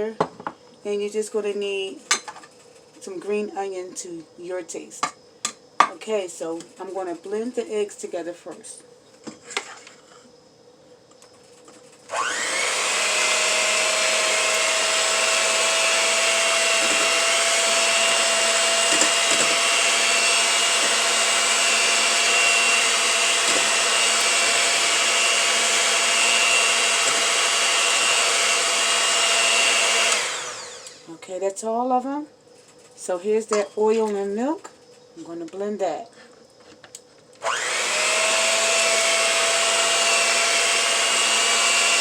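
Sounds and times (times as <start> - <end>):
electric blender whirring: 12.1 - 31.1, 37.4 - 42.0.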